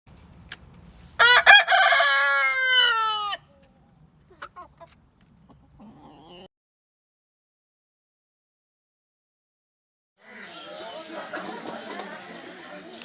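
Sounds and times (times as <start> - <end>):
rooster crowing: 1.2 - 3.5.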